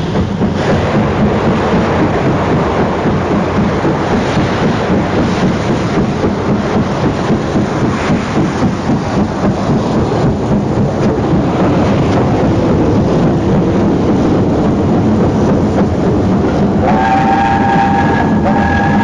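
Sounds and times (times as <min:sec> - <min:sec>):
train rumbling: 0:00.0 - 0:19.0
two-tone train horn: 0:16.7 - 0:19.0.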